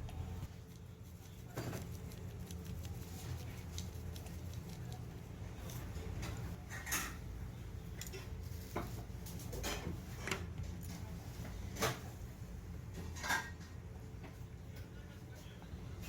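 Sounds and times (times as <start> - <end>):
dishes and utensils clinking: 5.8 - 7.3, 8.1 - 10.4, 12.9 - 13.8.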